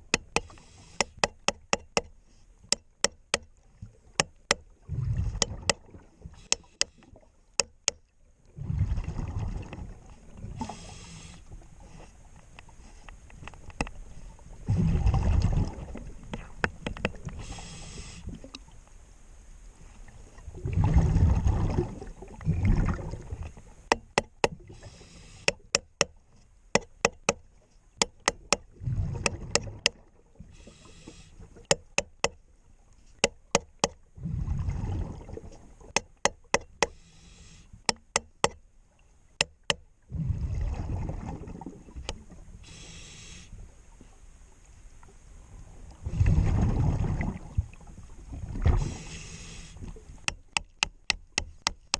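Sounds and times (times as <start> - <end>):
diver exhaling bubbles: 14.6 - 16.0, 20.6 - 23.4, 34.2 - 35.5, 40.1 - 41.9, 46.0 - 47.6.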